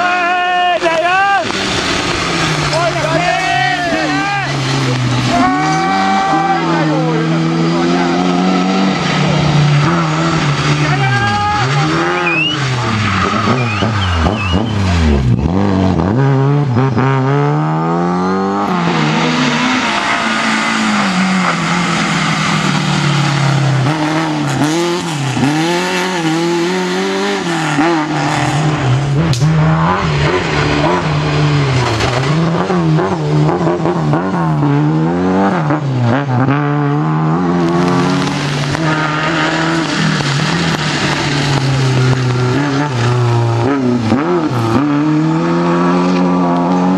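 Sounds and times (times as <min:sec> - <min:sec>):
rally car engine revving: 0:00.0 - 0:46.9
tyre squeal: 0:05.2 - 0:07.9, 0:09.8 - 0:15.7.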